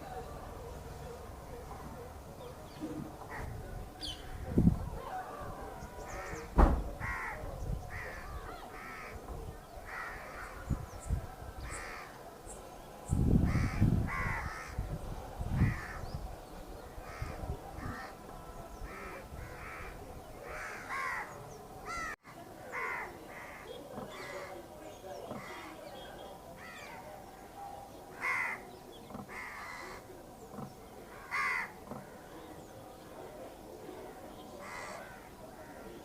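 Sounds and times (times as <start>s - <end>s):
crows cawing: 6.2s - 9.2s, 9.9s - 10.6s, 18.9s - 21.3s, 21.9s - 23.6s, 28.2s - 28.6s, 29.3s - 30.0s, 31.1s - 31.8s, 34.6s - 35.8s
sharp low knock: 6.5s - 7.0s.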